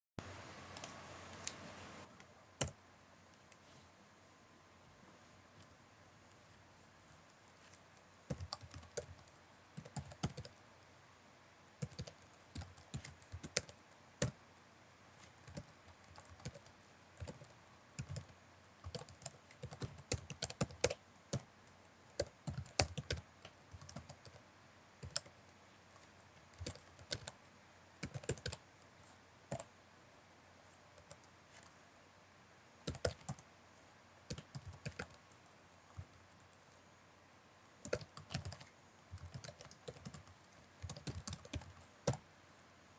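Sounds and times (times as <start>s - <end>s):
typing on computer keyboard: 8.0s - 10.6s, 11.8s - 14.4s, 15.3s - 21.5s, 22.2s - 24.4s, 25.0s - 25.4s, 26.4s - 27.4s, 28.0s - 28.6s, 29.5s - 29.7s, 31.0s - 31.7s, 32.8s - 33.4s, 34.3s - 36.6s, 37.8s - 42.2s.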